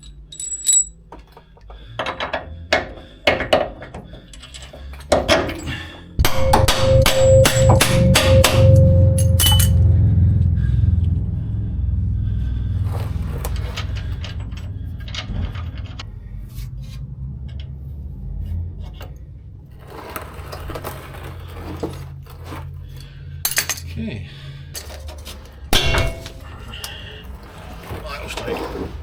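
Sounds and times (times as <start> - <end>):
metal tools clinking and scraping: 0.0 - 9.9, 12.8 - 16.0, 19.8 - 24.0, 24.7 - 29.0
steady low hum: 0.0 - 20.2, 20.8 - 28.4
sharp knocks: 6.2 - 9.8.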